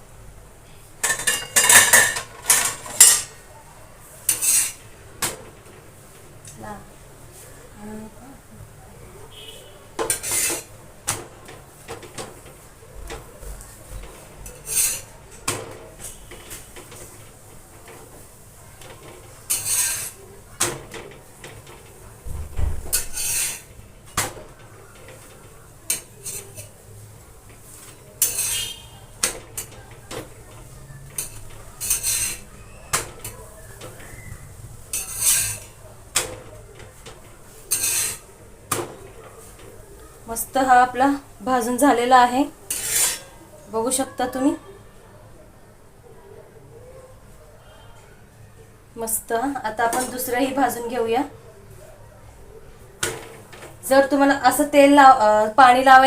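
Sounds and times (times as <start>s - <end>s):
utensil scraping on a griddle: 4.1s - 4.9s, 10.0s - 10.8s, 11.8s - 22.0s, 22.9s - 39.8s, 42.6s - 43.5s.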